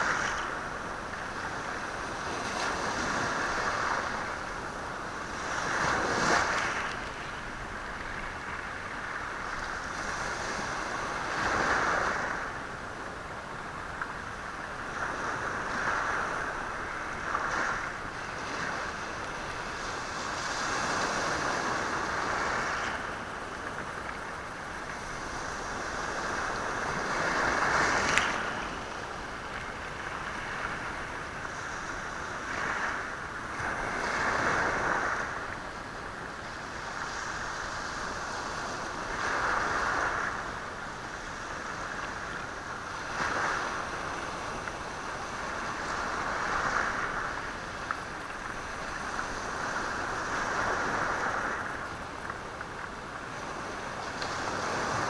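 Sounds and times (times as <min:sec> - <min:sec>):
sea waves breaking on shore: 0:00.0 - 0:55.0.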